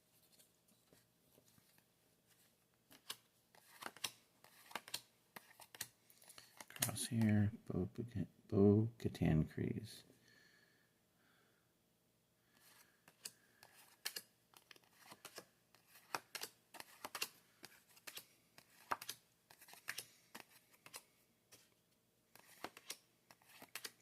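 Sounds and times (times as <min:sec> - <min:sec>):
trading cards flipping: 0:00.3 - 0:07.3, 0:12.6 - 0:21.7, 0:22.3 - 0:24.0.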